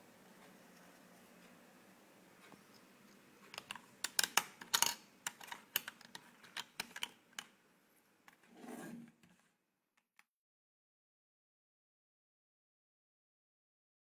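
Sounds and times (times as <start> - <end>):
plastic buttons clicking: 3.6 - 7.5.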